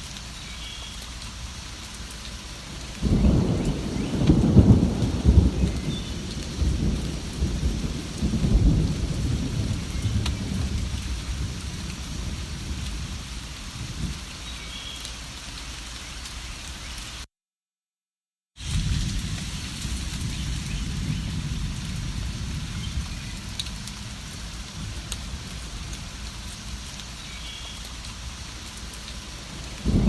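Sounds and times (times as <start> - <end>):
steady rain falling: 0.0 - 17.3, 18.6 - 30.0
thunder rumbling: 2.6 - 14.3, 18.6 - 26.8, 29.1 - 30.0.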